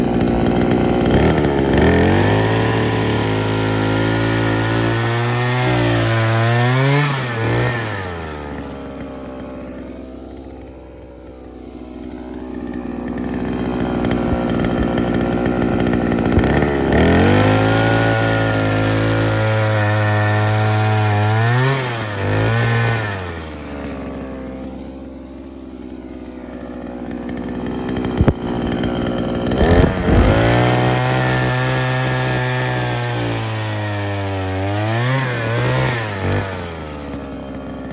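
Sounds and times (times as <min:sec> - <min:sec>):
earth auger engine revving: 0:00.0 - 0:37.9.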